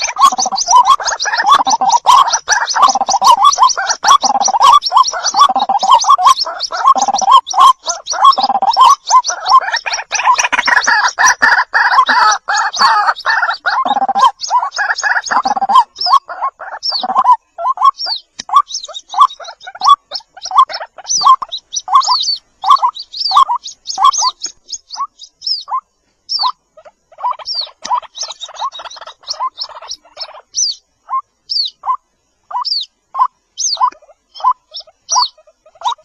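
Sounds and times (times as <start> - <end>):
chicks chirping: 0.0 - 36.0.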